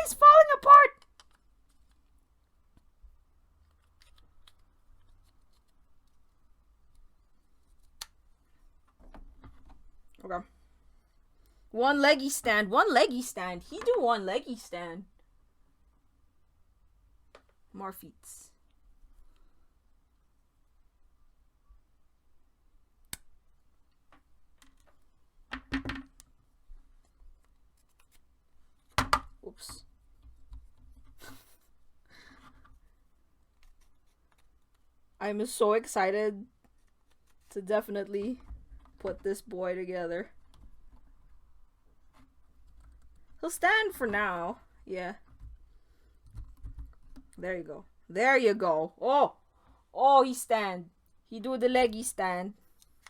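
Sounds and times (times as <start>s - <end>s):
small parts clicking and tapping: 1.0s - 2.2s.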